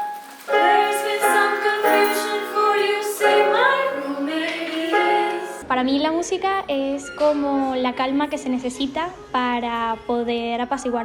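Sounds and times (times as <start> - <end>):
youth choir singing a cappella: 0.5 - 5.6.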